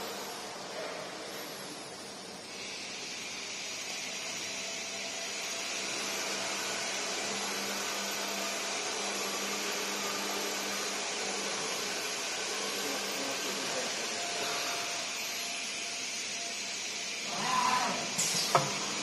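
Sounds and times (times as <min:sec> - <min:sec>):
router machine whirring: 0:03.3 - 0:19.0.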